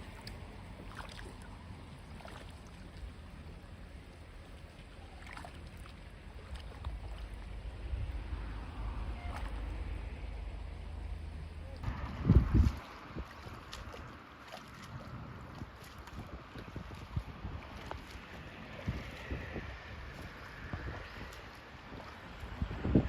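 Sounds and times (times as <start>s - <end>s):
small splashes: 0.0s - 23.0s
water sloshing and trickling: 0.0s - 23.0s
wind rumble on microphone: 0.0s - 23.0s.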